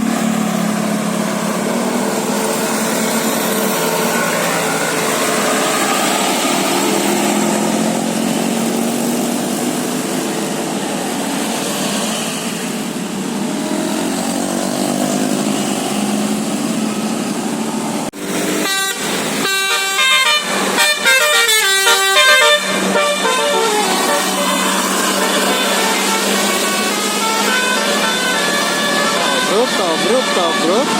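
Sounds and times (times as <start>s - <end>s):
noisy street sound: 0.0s - 30.9s
bus musical air horn: 18.5s - 30.9s.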